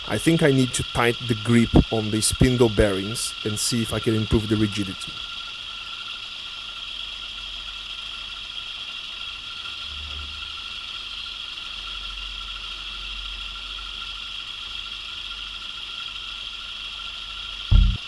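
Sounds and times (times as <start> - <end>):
low thump: 17.7 - 18.0.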